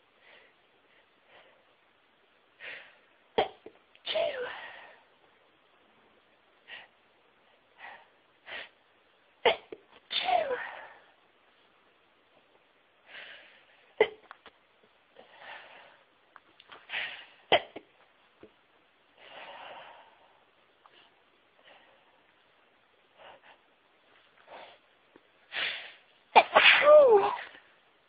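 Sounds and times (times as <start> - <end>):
person sneezing: 26.4 - 27.6.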